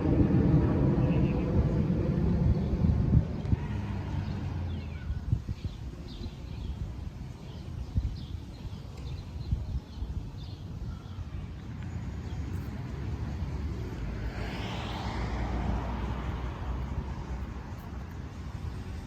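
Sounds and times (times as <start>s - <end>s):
vehicle passing whoosh: 0.0s - 5.1s, 13.2s - 19.0s.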